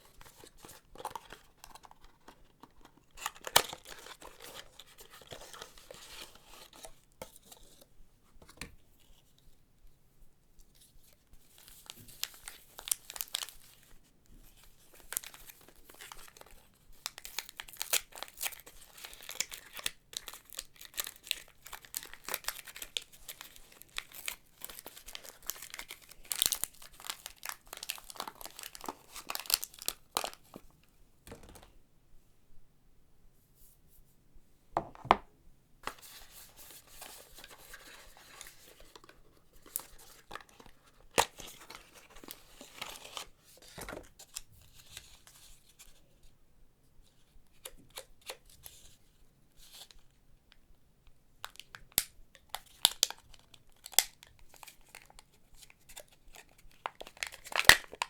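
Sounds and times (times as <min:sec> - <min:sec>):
wrapper rustling and crackling: 0:11.6 - 0:13.7, 0:14.9 - 0:30.7, 0:52.6 - 0:58.0
wrapper snapping: 0:56.8 - 0:58.0.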